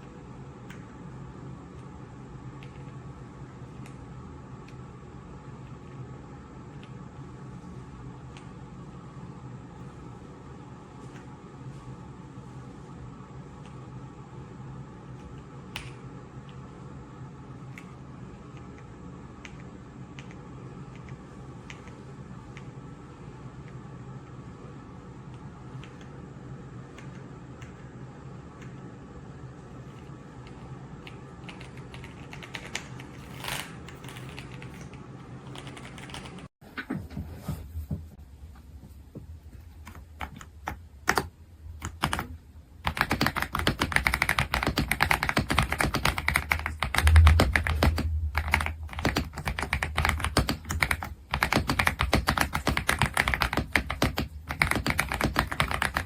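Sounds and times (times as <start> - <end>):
low steady hum: 0.0 - 56.0
mechanical keyboard typing: 31.5 - 34.9, 35.5 - 36.5, 39.9 - 56.0.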